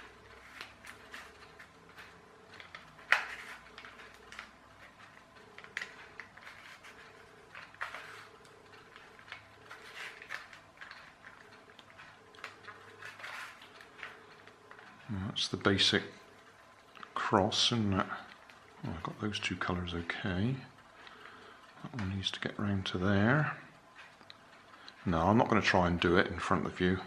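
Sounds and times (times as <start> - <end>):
puzzle cube clicking and scraping: 0.0 - 15.0.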